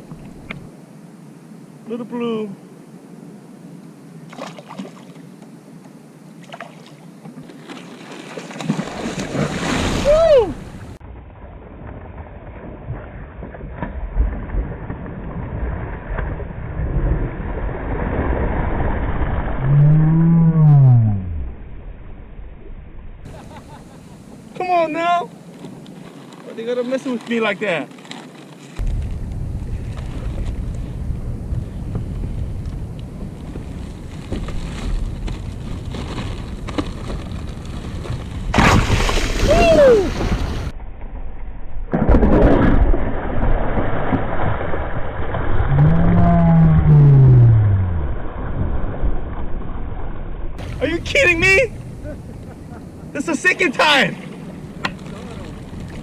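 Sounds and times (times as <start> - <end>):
water slapping a kayak: 6.4 - 19.6, 23.3 - 40.7, 47.8 - 56.0
wind buffeting microphone: 28.8 - 40.8.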